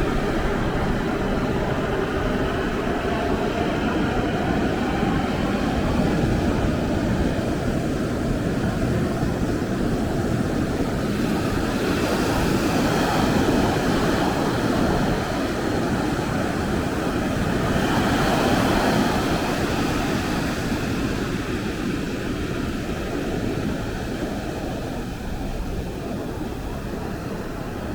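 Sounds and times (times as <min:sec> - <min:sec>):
ocean waves washing in: 0:00.0 - 0:15.8.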